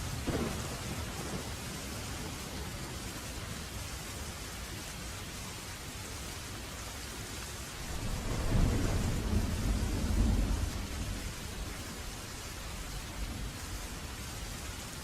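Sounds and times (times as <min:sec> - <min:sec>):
thunder rumbling: 0:00.0 - 0:02.7, 0:07.8 - 0:14.6
steady rain falling: 0:00.0 - 0:15.0.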